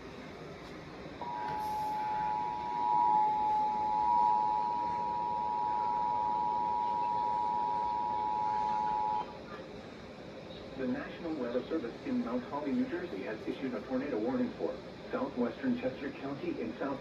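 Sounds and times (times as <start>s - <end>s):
steady two-tone alarm: 1.2s - 9.3s.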